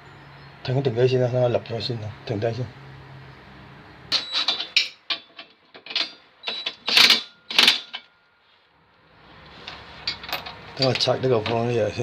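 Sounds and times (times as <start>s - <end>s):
metal tools clinking and clanking: 4.1s - 8.2s, 9.6s - 12.0s.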